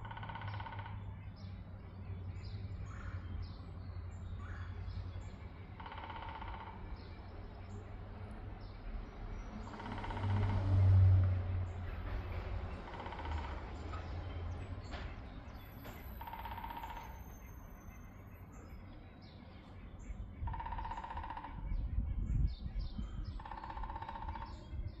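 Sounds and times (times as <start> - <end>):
woodpecker drumming on wood: 0.0 - 1.3, 5.6 - 7.3, 9.6 - 17.6, 20.4 - 21.7, 23.3 - 25.0.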